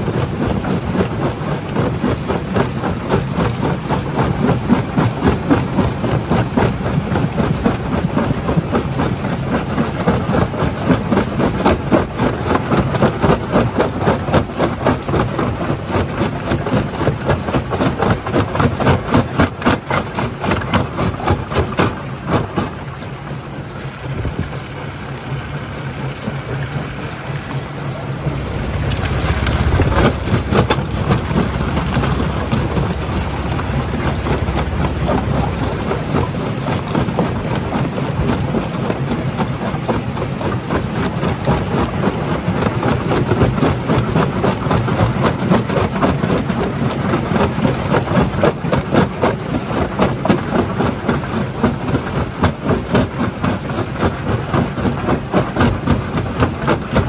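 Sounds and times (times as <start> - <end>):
deep rumble: 24.0 - 38.6
rock crusher rattling: 26.2 - 57.0.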